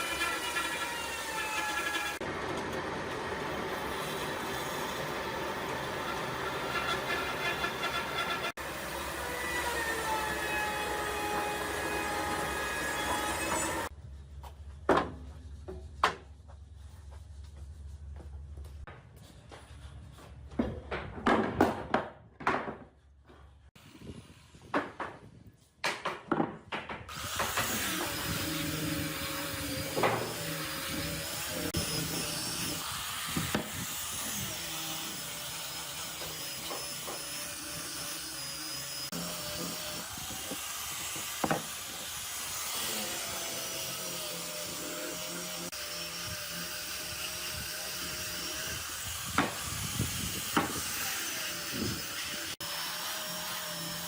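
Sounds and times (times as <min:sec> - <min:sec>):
electric power tool running: 0:11.3 - 0:13.9.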